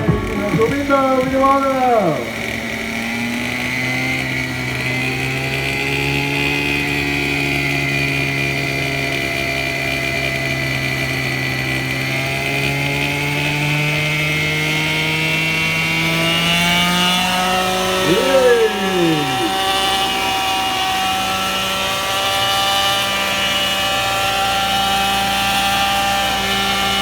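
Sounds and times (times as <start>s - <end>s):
model helicopter engine buzzing: 1.1s - 19.8s.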